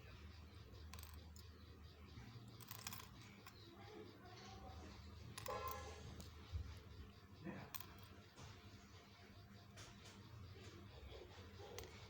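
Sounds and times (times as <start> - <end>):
plastic toy pieces clicking: 0.7 - 1.6, 2.4 - 3.6.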